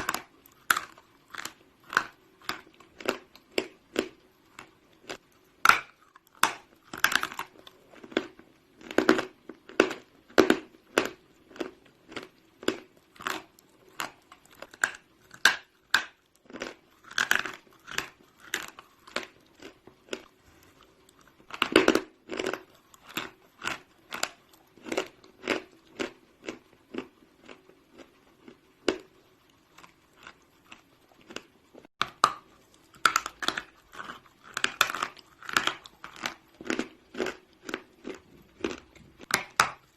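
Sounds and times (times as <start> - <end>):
chalk crunching while chewed: 0.0 - 39.9.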